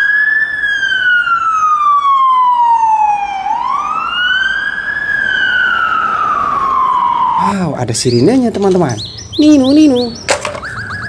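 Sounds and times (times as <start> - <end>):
toy siren wailing: 9.4 - 11.0.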